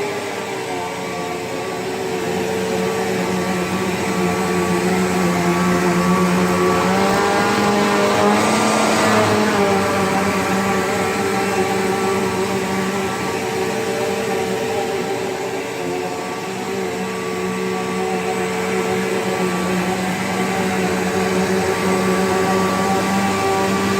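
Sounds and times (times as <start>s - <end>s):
vacuum cleaner motor running: 0.0s - 23.9s.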